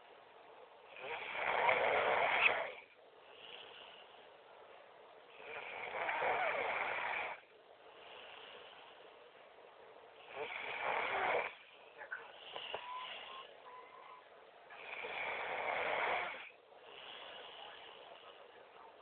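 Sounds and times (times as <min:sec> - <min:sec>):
quiet breathing: 0:00.0 - 0:19.0
person snoring: 0:10.2 - 0:11.6.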